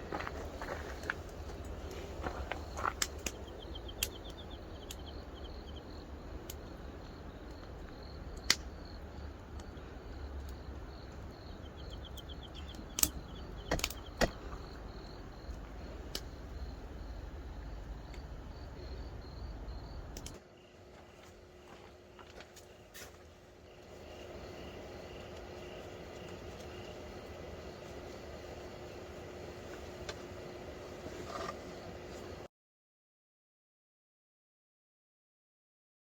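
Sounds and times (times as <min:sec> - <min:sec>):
steady low rumble: 0:00.0 - 0:22.4
insects chirping: 0:00.0 - 0:32.5
sharp clicks: 0:02.9 - 0:05.2, 0:08.4 - 0:08.7, 0:11.9 - 0:14.4, 0:20.2 - 0:20.4.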